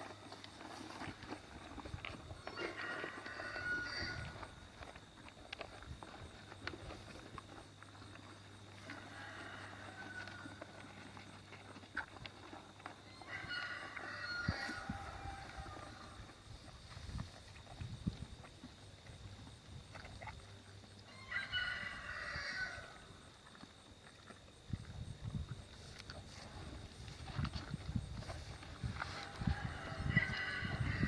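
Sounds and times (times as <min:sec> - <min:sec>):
rooster crowing: 0:02.5 - 0:04.3, 0:08.9 - 0:10.6, 0:13.1 - 0:16.2, 0:21.1 - 0:23.0, 0:29.0 - 0:31.0.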